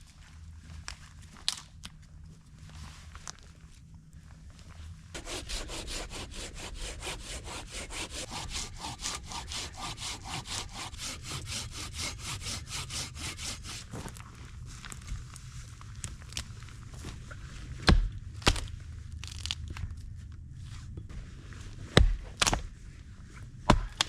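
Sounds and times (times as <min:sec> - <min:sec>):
hand saw cutting wood: 0:05.2 - 0:14.0.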